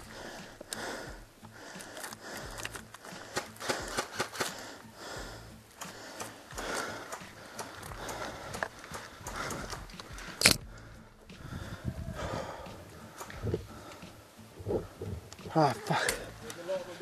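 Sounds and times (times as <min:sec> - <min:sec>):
heavy breathing: 0:00.0 - 0:17.0
sharp clicks or snaps: 0:01.9 - 0:04.6, 0:05.7 - 0:10.6.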